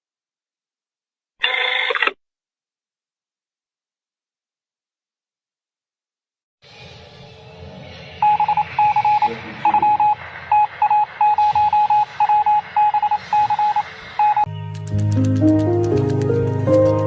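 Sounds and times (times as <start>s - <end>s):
electronic beeps: 8.2s - 14.5s.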